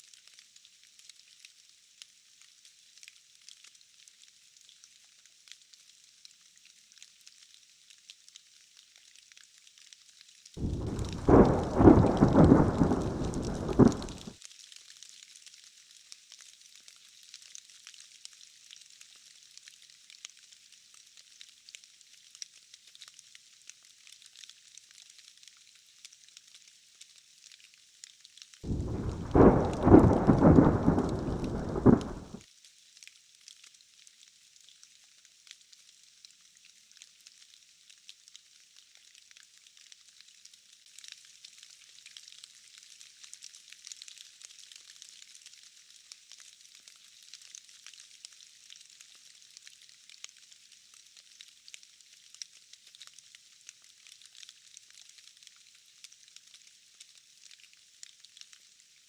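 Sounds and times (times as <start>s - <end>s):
light rain hiss: 0.0s - 59.0s
thunder clap and roll: 10.6s - 14.3s, 28.7s - 32.4s.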